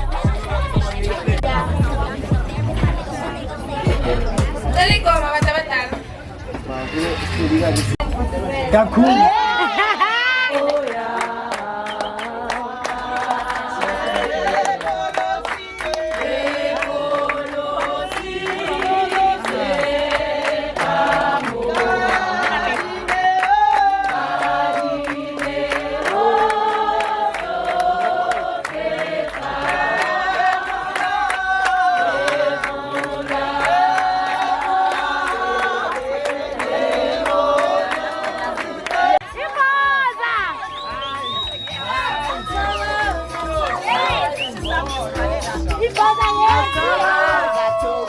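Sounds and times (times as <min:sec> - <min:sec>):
choir singing in harmony: 0:10.5 - 0:39.3.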